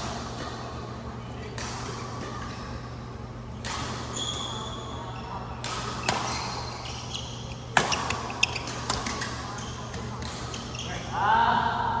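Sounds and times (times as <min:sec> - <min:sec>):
shoes squeaking on court: 0:03.7 - 0:11.1
racket striking shuttlecock: 0:07.7 - 0:09.3.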